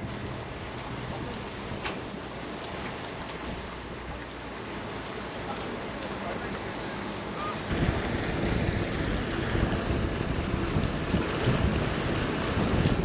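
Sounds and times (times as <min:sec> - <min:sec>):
rushing water: 0:00.0 - 0:13.0
wind buffeting microphone: 0:07.6 - 0:13.0.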